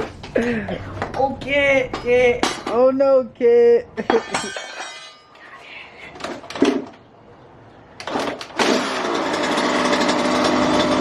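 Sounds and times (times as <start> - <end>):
two-stroke engine running: 8.6 - 11.0.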